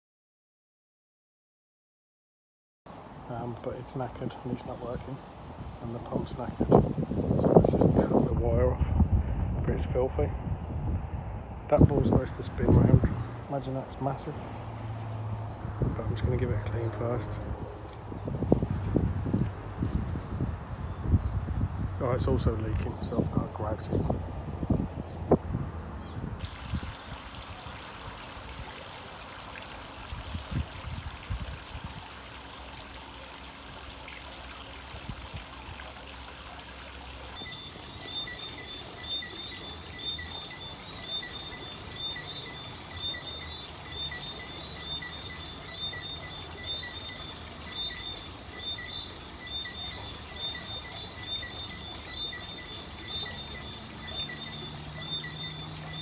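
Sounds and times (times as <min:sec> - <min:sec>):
water trickling on stone: 0:11.8 - 0:22.0, 0:26.4 - 0:56.0
faint high chirp: 0:37.3 - 0:56.0.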